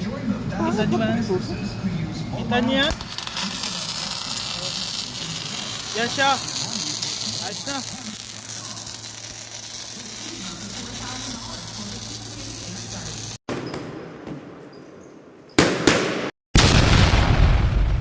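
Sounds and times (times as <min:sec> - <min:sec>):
steady hiss: 0:02.9 - 0:13.4.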